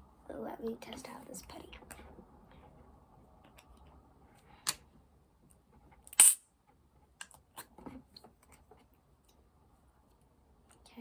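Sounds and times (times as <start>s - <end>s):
putty snapping pop: 6.1s - 6.4s.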